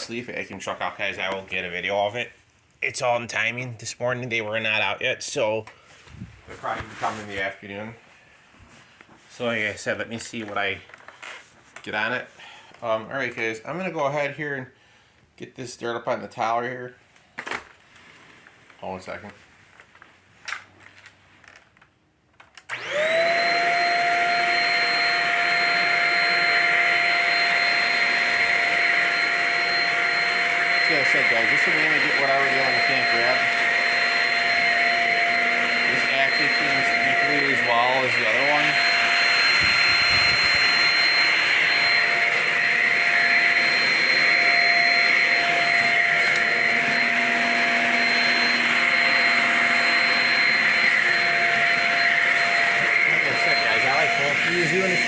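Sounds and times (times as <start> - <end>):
vacuum cleaner motor whine: 22.7 - 55.0.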